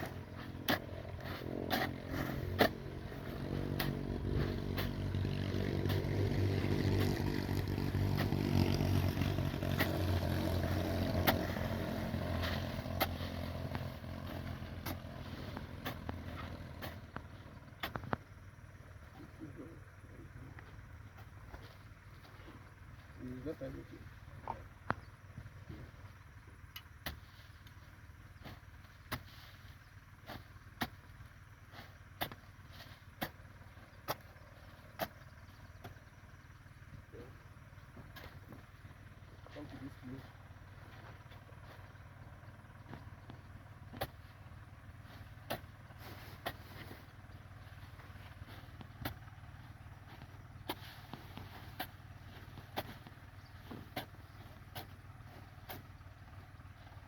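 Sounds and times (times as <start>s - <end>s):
low steady rumble: 0.0s - 57.0s.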